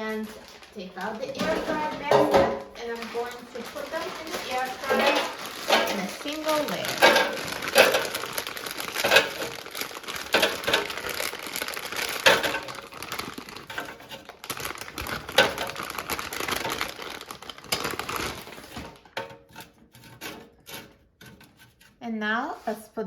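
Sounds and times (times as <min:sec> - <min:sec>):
plastic wrapper rustling: 0:00.0 - 0:21.9
food clacking on air fryer basket: 0:01.0 - 0:21.8.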